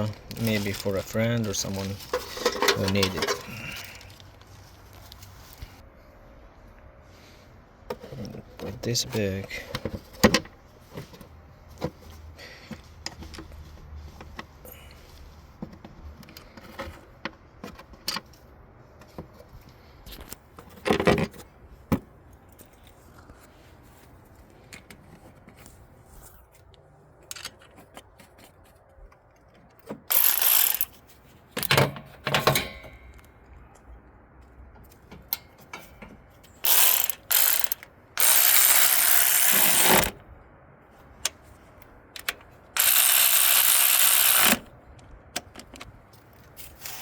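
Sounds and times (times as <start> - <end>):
metal parts clicking and clinking: 0.0 - 4.2, 29.4 - 31.0, 31.6 - 33.3, 34.8 - 40.1, 42.1 - 47.0
metal parts clattering: 0.3 - 4.1, 30.1 - 30.9, 36.6 - 40.1, 42.8 - 44.6.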